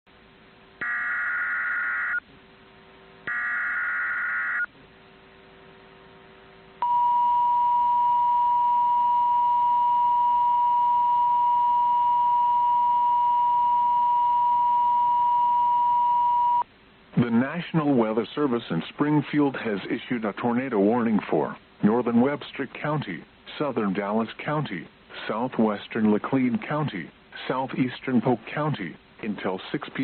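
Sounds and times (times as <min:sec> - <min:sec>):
harsh buzzy data bursts: 0:00.8 - 0:02.2, 0:03.3 - 0:04.7.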